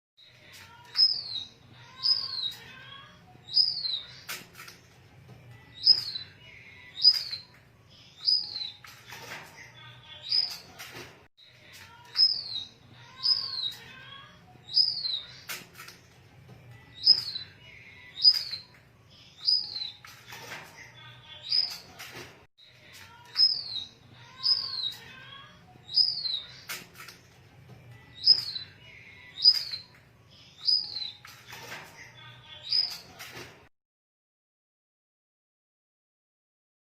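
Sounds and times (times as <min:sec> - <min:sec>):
finch chirping: 0:03.4 - 0:04.1, 0:08.2 - 0:08.8, 0:14.6 - 0:15.5, 0:19.4 - 0:20.0, 0:25.8 - 0:26.8, 0:28.1 - 0:28.7, 0:30.6 - 0:31.2.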